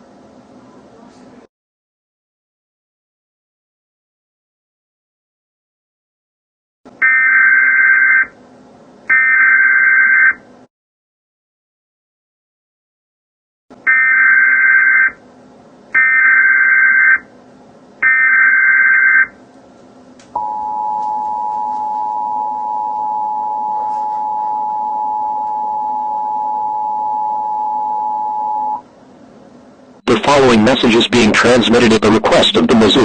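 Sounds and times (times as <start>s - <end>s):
two-tone attention signal: 20.4s - 28.8s.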